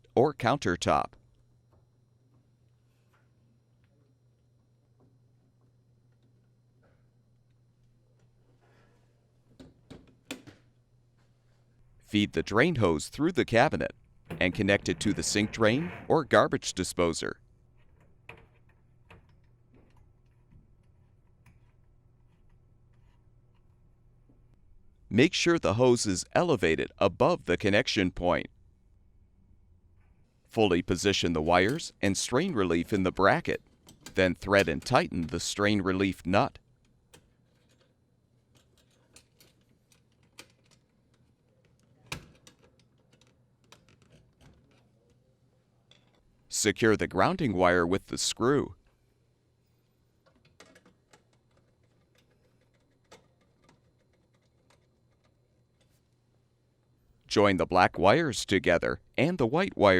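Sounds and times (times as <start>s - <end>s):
hands clicking and tapping small parts: 50.2s - 55.9s.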